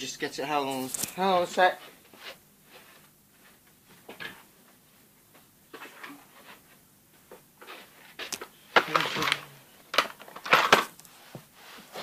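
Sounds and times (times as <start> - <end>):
objects knocking and rustling: 3.6 - 4.8, 5.4 - 12.0
objects clattering: 8.3 - 11.0.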